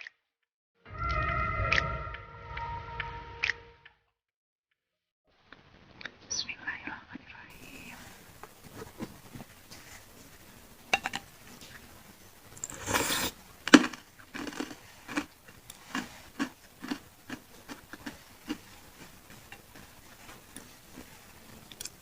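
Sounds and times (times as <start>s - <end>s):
chewing: 12.6s - 22.0s.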